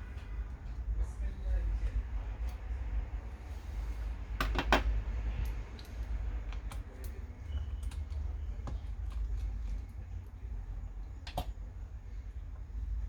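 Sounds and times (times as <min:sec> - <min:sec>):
clicks and taps of hard objects: 0:04.4 - 0:05.0.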